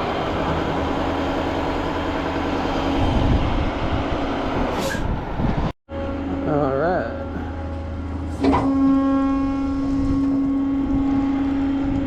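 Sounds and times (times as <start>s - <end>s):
tow truck engine droning: 0.0s - 12.0s.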